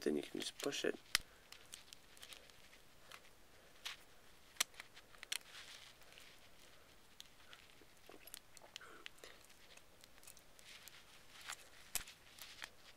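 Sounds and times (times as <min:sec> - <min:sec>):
handling small plastic parts: 0:00.3 - 0:12.9.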